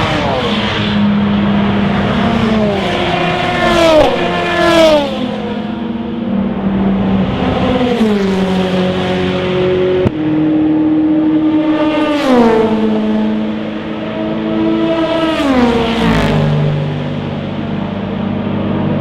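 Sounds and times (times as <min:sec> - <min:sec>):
race cars passing at speed: 0:00.0 - 0:19.0.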